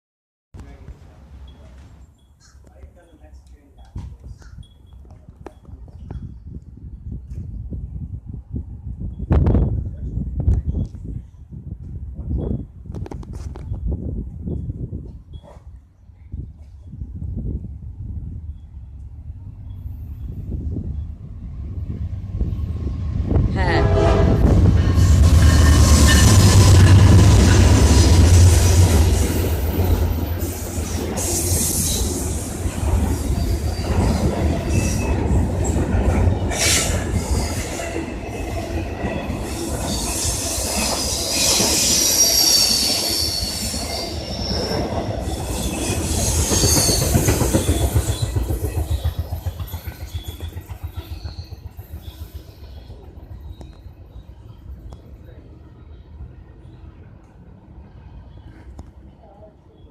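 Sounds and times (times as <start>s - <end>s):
diesel locomotives rumbling: 4.4s - 59.8s
train wheel squeal: 18.5s - 55.4s
clickety-clack over rail joints: 44.6s - 54.0s.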